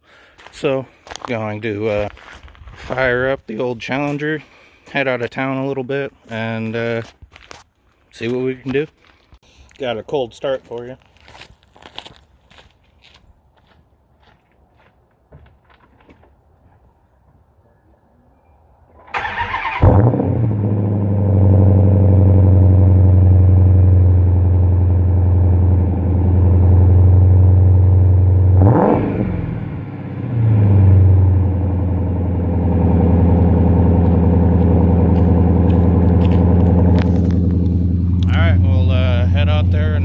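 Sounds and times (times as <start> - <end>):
car starter cranking: 19.1 - 20.3
car engine idling: 19.3 - 28.6, 29.3 - 40.0.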